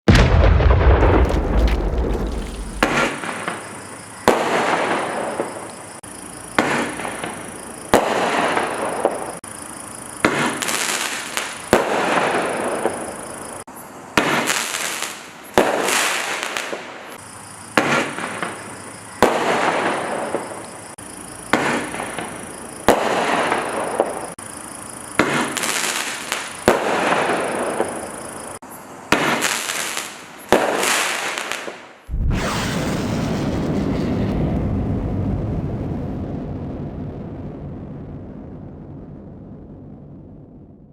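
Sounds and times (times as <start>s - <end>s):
firework tubes firing: 0.8s - 3.5s.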